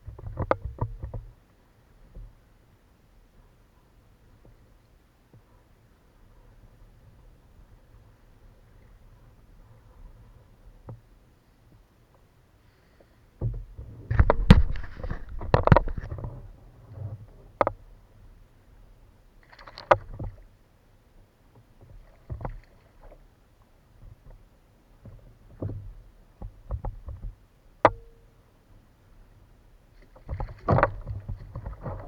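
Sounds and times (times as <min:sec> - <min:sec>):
knocks and clicks against hull: 0:00.0 - 0:02.4, 0:09.8 - 0:11.1, 0:13.4 - 0:18.0, 0:19.5 - 0:20.5, 0:21.5 - 0:23.2, 0:24.0 - 0:28.3, 0:30.0 - 0:32.0.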